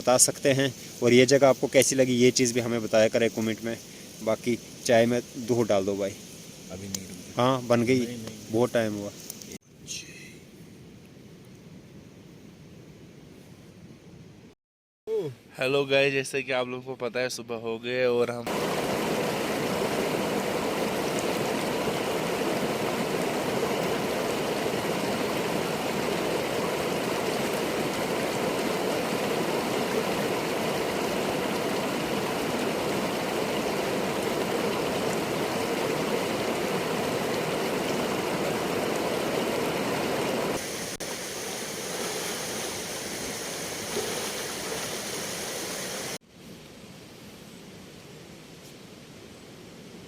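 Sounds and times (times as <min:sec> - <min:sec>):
river water rushing: 0:18.5 - 0:46.2.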